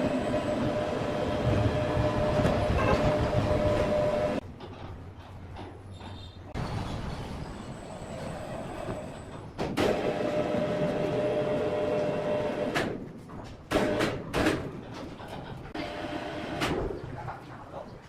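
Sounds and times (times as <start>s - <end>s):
machine whine: 0.0s - 4.4s
sawmill machinery running: 0.0s - 4.4s, 9.8s - 12.8s, 15.8s - 16.7s.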